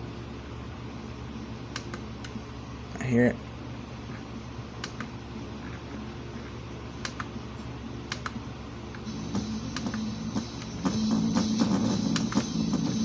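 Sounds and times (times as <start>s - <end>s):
low electrical hum: 0.0s - 13.0s
music through a speaker: 9.0s - 13.0s.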